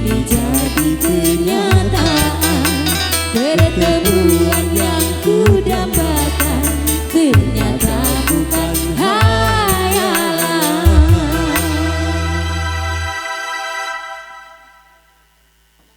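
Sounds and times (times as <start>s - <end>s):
bass line: 0.0s - 10.1s, 10.8s - 13.1s
hi-hat beat: 0.0s - 11.8s.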